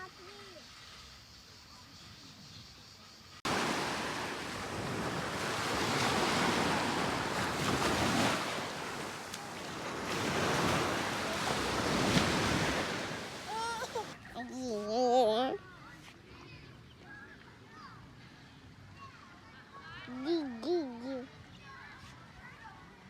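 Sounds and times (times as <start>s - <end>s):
sea waves washing ashore: 3.4s - 14.2s
wind buffeting microphone: 3.5s - 14.1s.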